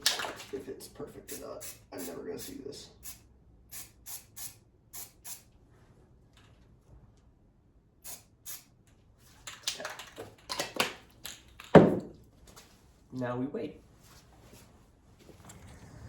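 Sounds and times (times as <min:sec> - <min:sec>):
spray paint can hissing: 0:01.3 - 0:05.5, 0:08.0 - 0:08.7.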